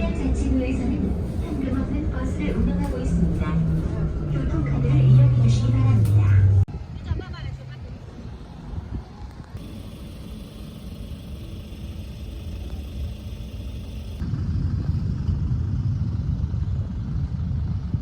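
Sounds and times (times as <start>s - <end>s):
bus rumble from inside: 0.0s - 9.7s, 14.1s - 18.0s.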